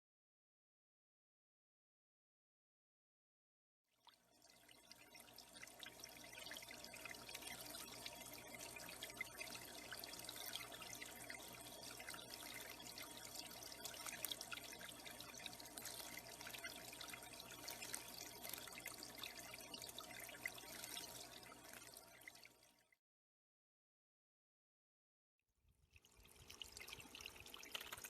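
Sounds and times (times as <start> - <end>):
pond water trickling and splashing: 3.9 - 23.0, 25.8 - 28.0.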